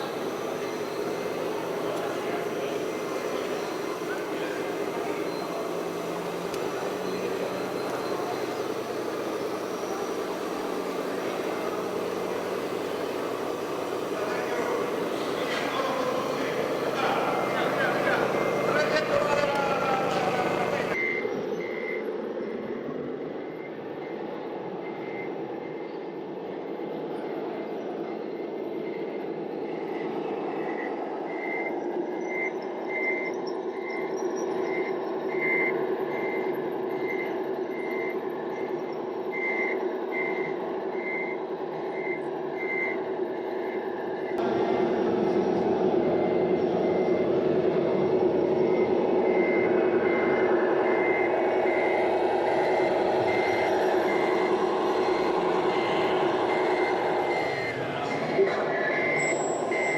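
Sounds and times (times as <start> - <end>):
reversing beeper high beeps: 0.0 - 22.0, 45.8 - 59.9
model truck drive whine: 0.0 - 59.9.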